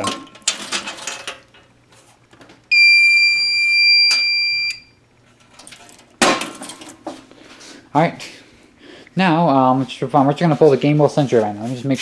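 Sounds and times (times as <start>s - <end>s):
high-pitched buzzer tone: 2.7s - 5.0s.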